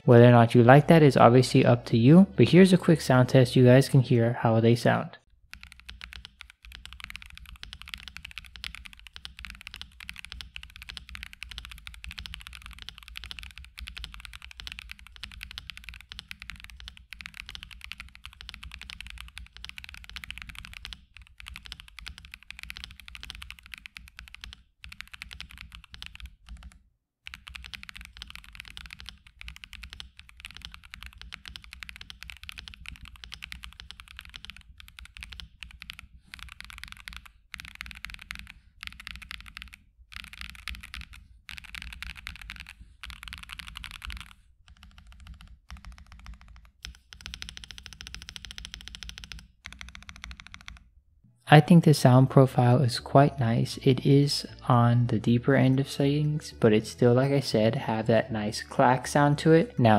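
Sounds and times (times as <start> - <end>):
typing on mechanical keyboard: 5.5 - 50.9.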